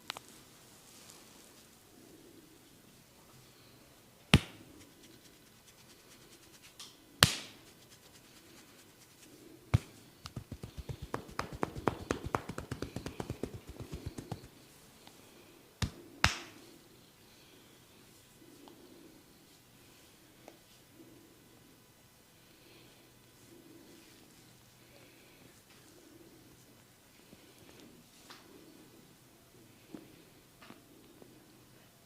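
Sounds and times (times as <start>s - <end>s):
hands slapping a head: 4.3s - 4.6s, 7.2s - 7.7s, 9.7s - 14.5s, 15.8s - 16.6s
fast tapping on a head: 9.7s - 14.6s, 15.8s - 16.5s.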